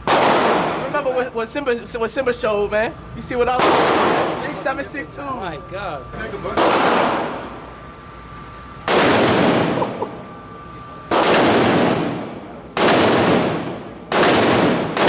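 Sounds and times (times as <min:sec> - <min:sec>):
gunshots echoing: 0:00.0 - 0:00.9, 0:03.6 - 0:04.6, 0:06.6 - 0:07.5, 0:08.8 - 0:10.3, 0:11.1 - 0:15.0.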